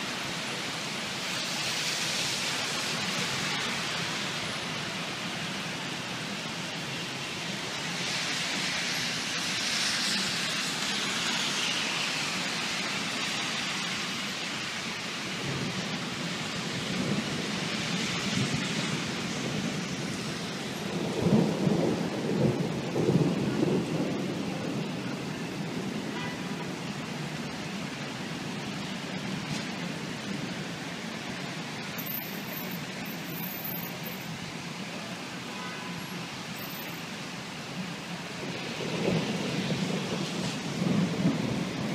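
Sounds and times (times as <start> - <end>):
heavy rain falling: 0.0 - 41.9
thunder rumbling: 15.4 - 30.7, 38.3 - 41.9.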